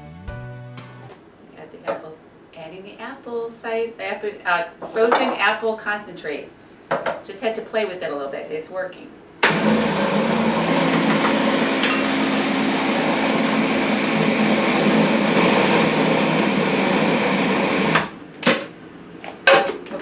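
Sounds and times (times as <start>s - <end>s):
food processor motor running: 9.4s - 18.2s.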